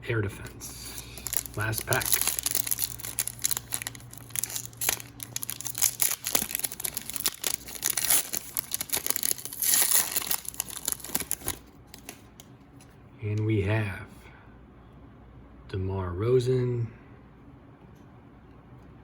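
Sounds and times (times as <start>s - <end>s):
foil wrapper crinkling: 0.4s - 12.5s.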